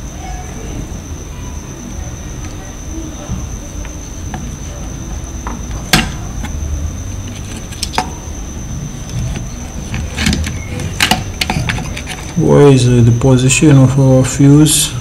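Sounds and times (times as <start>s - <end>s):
faint high whine: 0.0s - 15.0s
steady low hum: 0.0s - 15.0s
tools and parts clicking: 7.3s - 8.2s, 9.0s - 12.4s.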